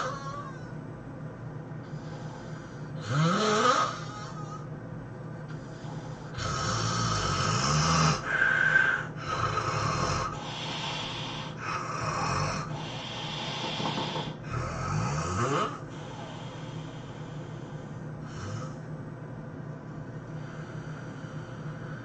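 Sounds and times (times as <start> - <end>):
man snoring loudly: 3.0 - 4.6, 6.3 - 8.5, 9.2 - 15.8, 18.3 - 18.8.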